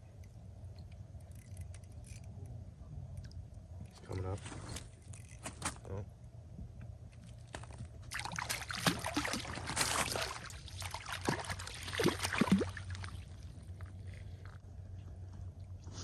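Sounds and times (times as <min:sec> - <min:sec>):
fish thrashing in water: 0:08.0 - 0:14.6.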